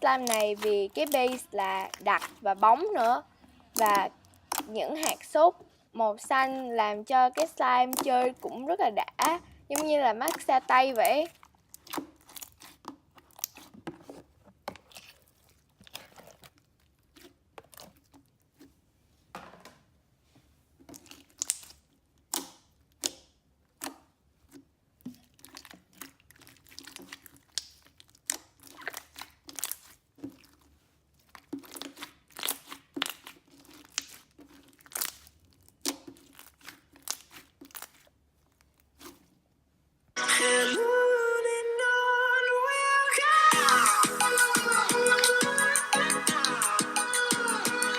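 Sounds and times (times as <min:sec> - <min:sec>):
crunchy slime squeezed by hand: 0:11.2 - 0:13.7, 0:21.0 - 0:24.1, 0:25.2 - 0:39.2.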